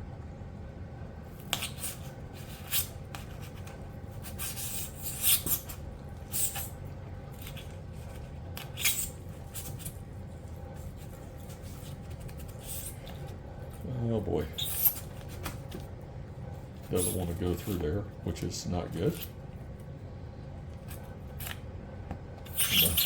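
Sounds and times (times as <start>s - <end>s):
steady low hum: 0.0s - 23.0s
wire scraping and rustling: 1.3s - 15.9s, 22.4s - 23.0s.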